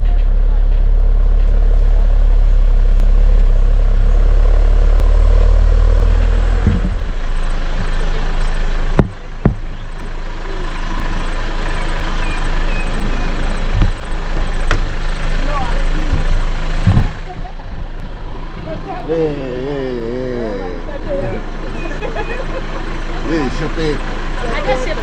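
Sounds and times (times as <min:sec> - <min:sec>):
vehicle engine and road rumble: 0:00.0 - 0:25.0
sharp knocks: 0:09.0 - 0:09.7, 0:16.1 - 0:17.2.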